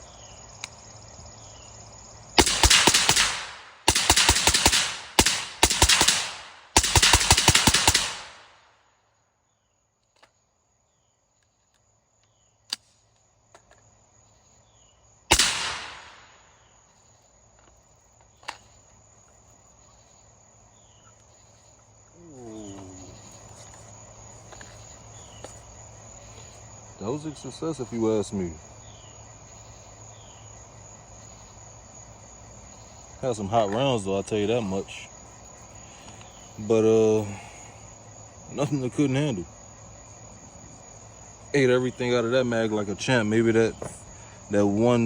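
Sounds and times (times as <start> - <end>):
crickets chirping: 0.0 - 45.0
rifle firing rapid shots: 2.4 - 8.6, 15.3 - 16.3.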